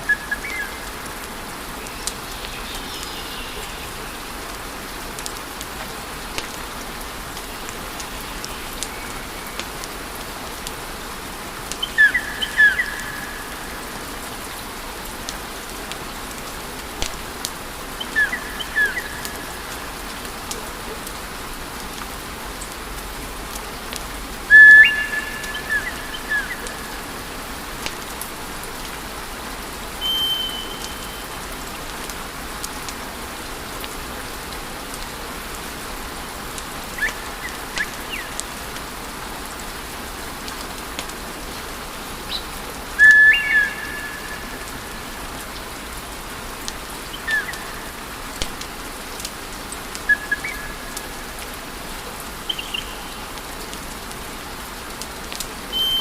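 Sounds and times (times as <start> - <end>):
high whistling chirps: 24.5 - 26.8, 30.0 - 31.3, 43.0 - 44.7, 55.7 - 56.0.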